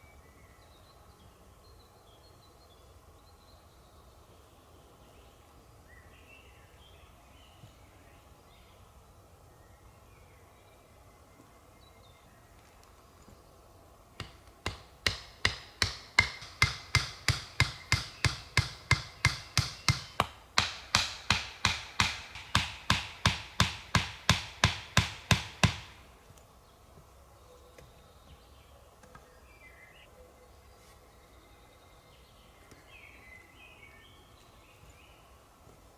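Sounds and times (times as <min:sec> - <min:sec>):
sharp knocks: 0:14.2 - 0:26.0.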